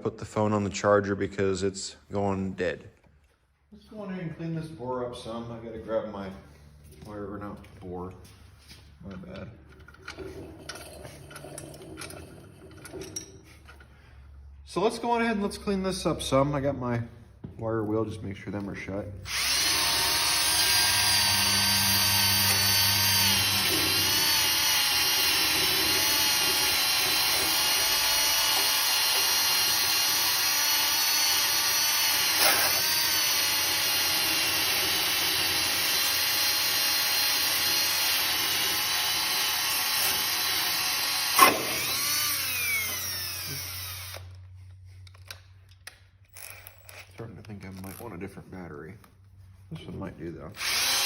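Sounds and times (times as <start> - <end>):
drill spinning wire wheel: 19.3 - 44.5, 46.3 - 47.1, 50.6 - 51.0.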